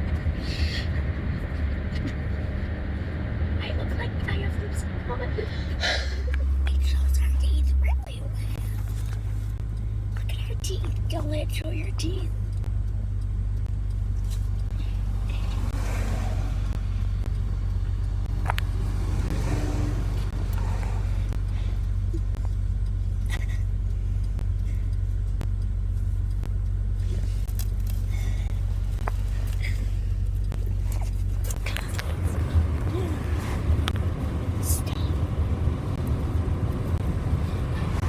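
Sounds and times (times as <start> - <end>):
car road and engine noise: 0.0 - 38.0
soft voices: 3.6 - 9.1, 30.6 - 33.5.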